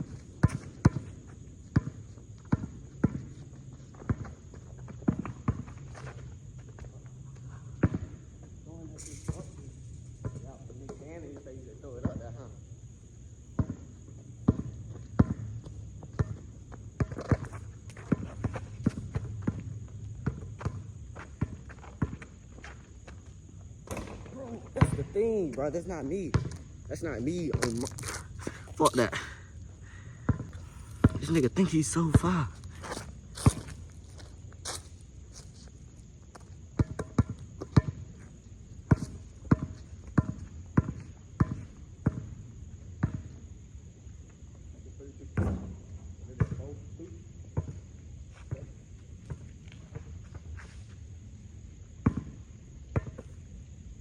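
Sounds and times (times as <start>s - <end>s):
basketball bouncing: 0.4s - 1.1s, 14.4s - 15.4s, 16.1s - 22.3s, 23.9s - 25.1s, 26.3s - 26.7s, 30.2s - 32.5s, 52.0s - 52.4s
high insect buzz: 22.0s - 36.6s
footsteps: 26.4s - 29.3s, 30.4s - 36.5s
basketball dribbling on hard court: 30.3s - 32.4s.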